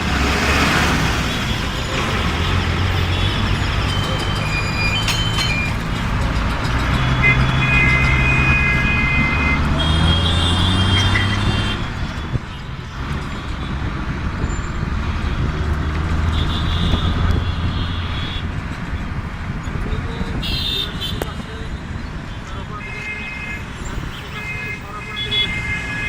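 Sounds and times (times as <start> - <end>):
diesel engines in traffic: 0.0 - 26.0
vehicle horns: 0.6 - 6.0, 6.6 - 12.8, 15.2 - 18.6, 20.0 - 21.7, 22.3 - 26.0.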